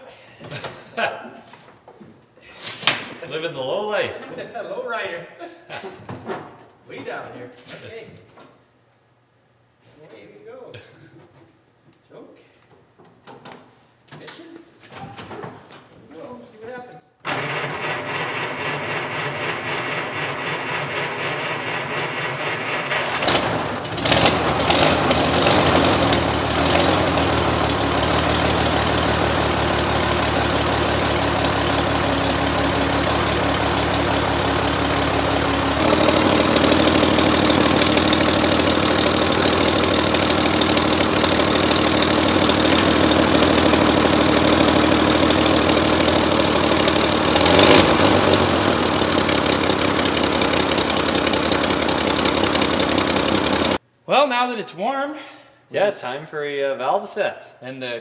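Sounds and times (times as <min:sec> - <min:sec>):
car engine running: 0:17.3 - 0:53.8
car engine starter cranking: 0:17.3 - 0:53.8.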